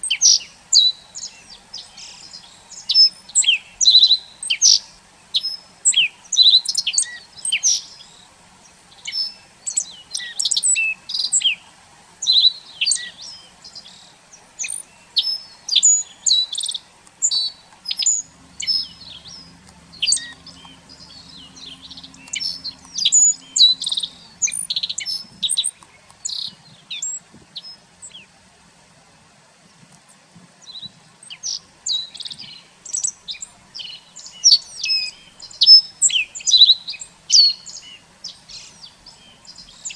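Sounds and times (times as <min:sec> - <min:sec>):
faint low hum: 0:00.0 - 0:29.2
songbirds chirping: 0:00.0 - 0:39.9.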